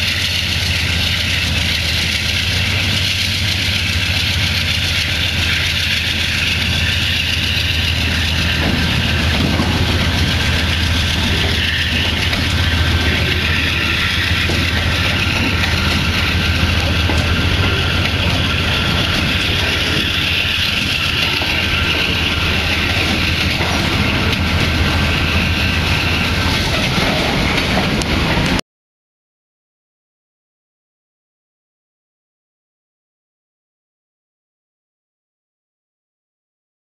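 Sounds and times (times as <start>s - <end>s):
diesel locomotive drone: 0.0s - 28.6s
rail cars rumbling and rattling: 0.0s - 28.6s.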